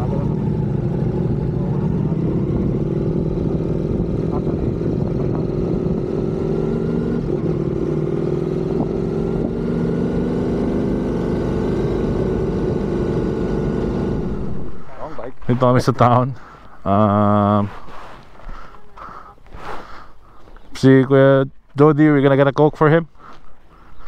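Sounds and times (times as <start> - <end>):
low wind rumble: 0.0 - 18.5
motorcycle engine cruising: 0.0 - 21.0.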